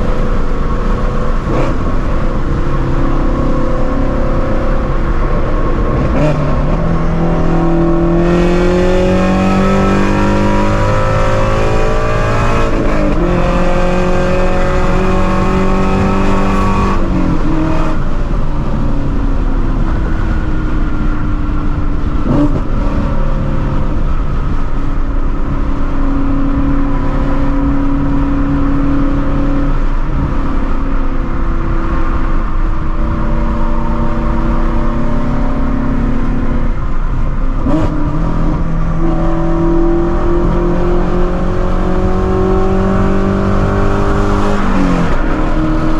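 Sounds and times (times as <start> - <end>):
car engine revving: 0.0 - 24.7, 25.3 - 45.9.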